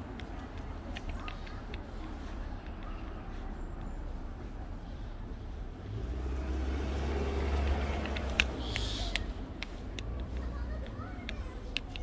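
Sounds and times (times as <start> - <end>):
vehicle rumbling past: 4.6 - 10.8.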